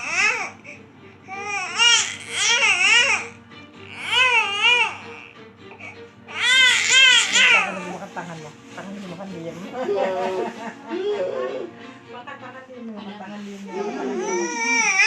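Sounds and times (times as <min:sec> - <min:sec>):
baby crying: 0:00.0 - 0:08.0, 0:09.8 - 0:11.8, 0:13.6 - 0:15.0.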